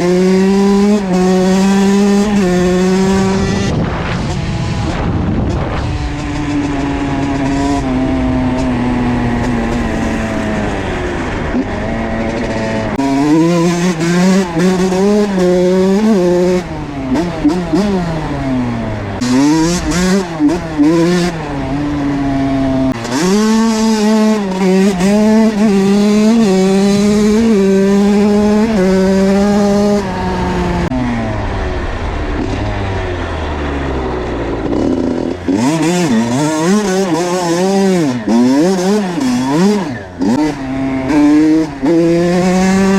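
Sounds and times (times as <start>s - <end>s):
two-stroke motorbike engine revving: 0.0s - 42.9s.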